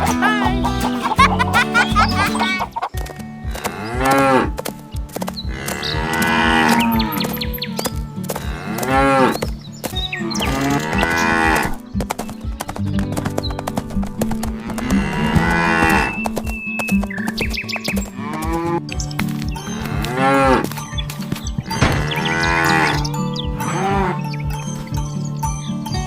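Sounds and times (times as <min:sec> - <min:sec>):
background music with beat: 0:00.0 - 0:26.0
cows mooing: 0:10.2 - 0:11.8, 0:14.6 - 0:16.2.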